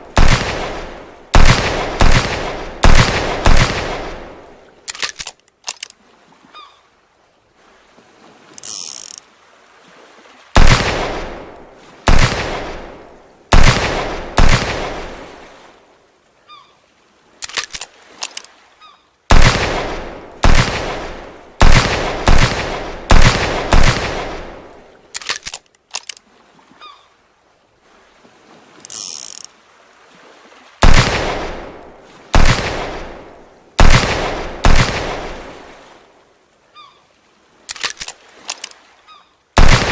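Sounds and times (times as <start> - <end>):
revolver gunshots ringing: 0.1 - 4.3, 13.5 - 15.0, 19.3 - 24.6, 30.8 - 31.8, 32.4 - 33.2, 33.8 - 35.4, 39.6 - 39.9
light clicks: 17.4 - 18.5, 37.7 - 38.8.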